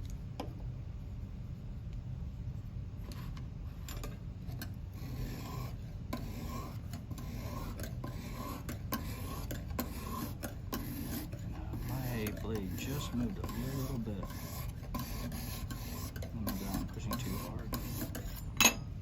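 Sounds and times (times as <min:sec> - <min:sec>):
hone scraping along knife edge: 0:03.9 - 0:18.8.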